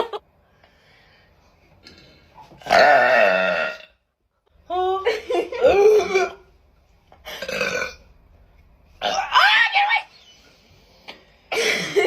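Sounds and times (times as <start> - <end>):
woman burping loudly: 2.6 - 4.0, 5.6 - 6.5, 7.2 - 8.0.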